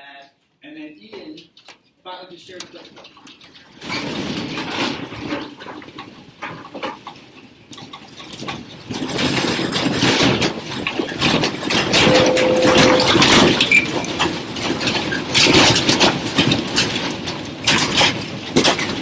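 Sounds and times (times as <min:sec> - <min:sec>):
steady tone: 0:12.0 - 0:13.8.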